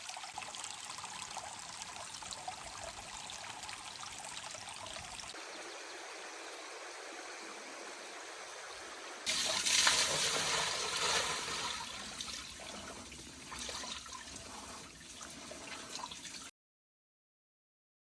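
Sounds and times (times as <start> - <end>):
stream water rushing over rocks: 9.3 - 15.8.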